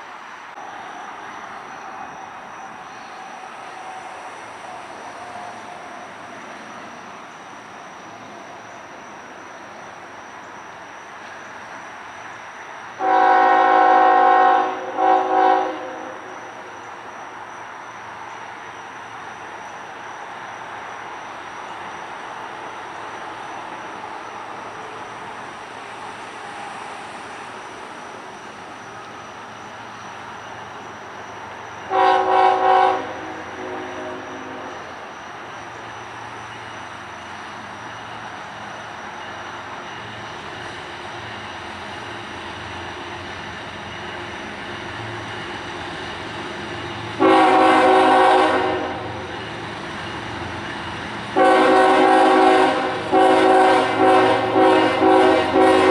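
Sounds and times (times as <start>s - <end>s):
freight train passing: 0.0s - 55.9s
locomotive air horn blasts: 13.0s - 16.2s, 31.9s - 34.8s, 47.2s - 49.3s, 51.4s - 55.9s.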